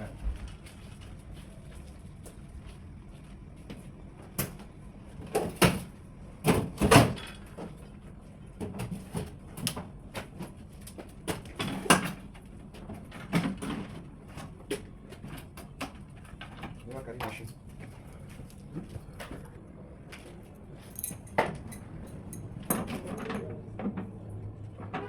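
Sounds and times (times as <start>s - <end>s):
knocks and clunks: 22.6s - 25.0s.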